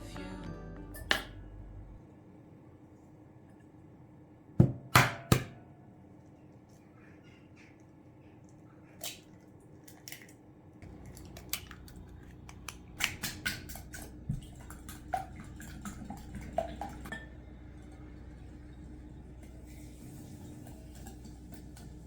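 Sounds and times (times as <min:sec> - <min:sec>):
faint low hum: 0:13.7 - 0:22.0.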